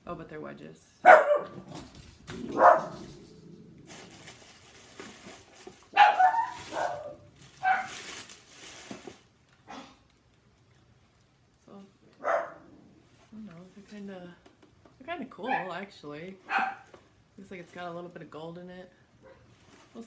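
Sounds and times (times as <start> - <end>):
dog barking and yipping: 1.0 - 3.1, 5.9 - 7.9, 12.2 - 12.6, 16.5 - 16.9.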